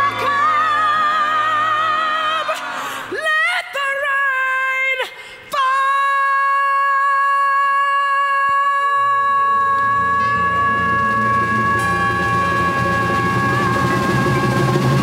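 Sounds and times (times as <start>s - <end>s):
woman singing: 0.0s - 15.0s
band playing: 9.7s - 15.0s.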